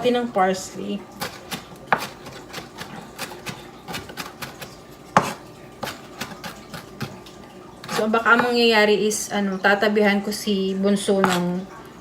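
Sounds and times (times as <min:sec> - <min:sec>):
knife chopping parsley: 0:01.2 - 0:07.2, 0:07.8 - 0:08.5, 0:11.2 - 0:11.6.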